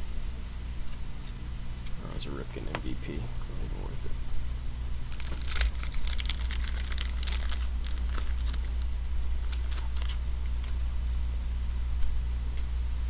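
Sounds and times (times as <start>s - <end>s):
electric fan hum: 0.0s - 13.0s
wrappers crinkling and rustling: 5.1s - 10.8s.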